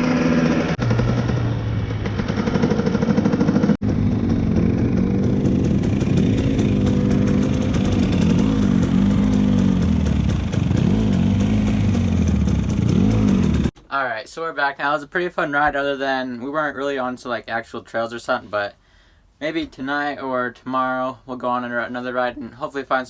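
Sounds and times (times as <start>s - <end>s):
dirt bike engine revving: 0.0s - 13.7s.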